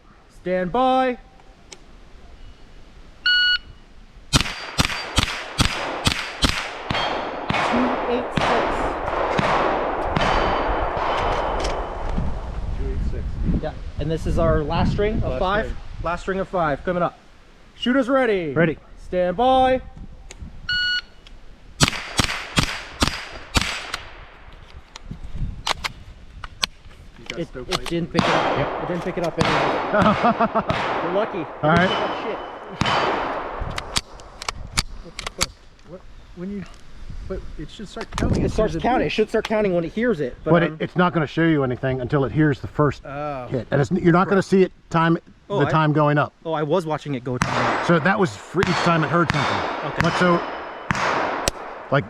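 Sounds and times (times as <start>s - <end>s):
rifle shots: 4.3s - 12.1s, 21.8s - 24.4s, 28.1s - 34.4s, 47.4s - 52.0s.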